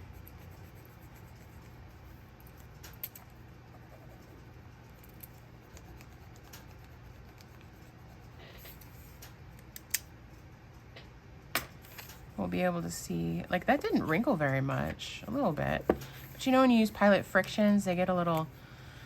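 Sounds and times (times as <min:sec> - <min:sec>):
pen scratching on paper: 0:00.0 - 0:01.9, 0:05.6 - 0:08.4.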